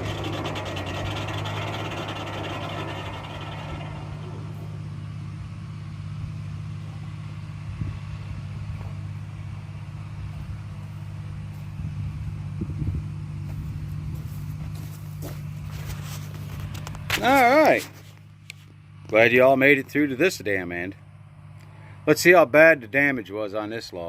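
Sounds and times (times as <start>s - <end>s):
circular saw rushing: 0.0s - 5.0s
tractor engine droning: 0.0s - 24.0s.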